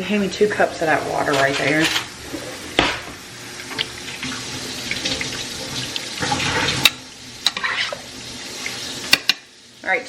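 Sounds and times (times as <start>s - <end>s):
water pouring into pot: 3.4s - 9.8s.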